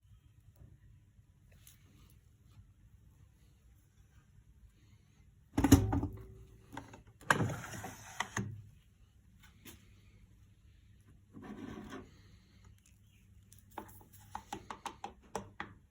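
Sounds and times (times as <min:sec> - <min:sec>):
low steady hum: 0:00.0 - 0:14.3
washing machine thunk: 0:05.6 - 0:06.3.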